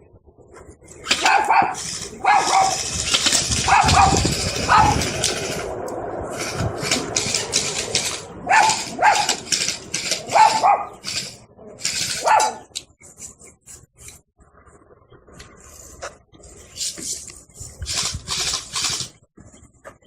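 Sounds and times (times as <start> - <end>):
dog barking: 1.2 - 2.9, 3.6 - 5.0, 8.5 - 9.4, 10.2 - 11.0, 12.2 - 12.7.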